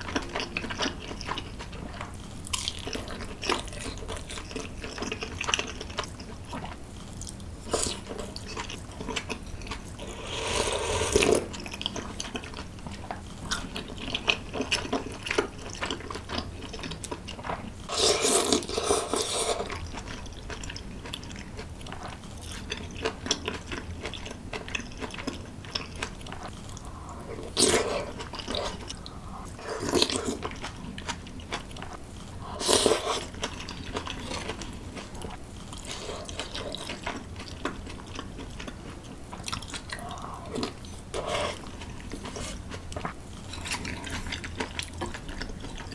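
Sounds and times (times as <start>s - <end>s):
person chewing and biting: 0.1s - 12.6s.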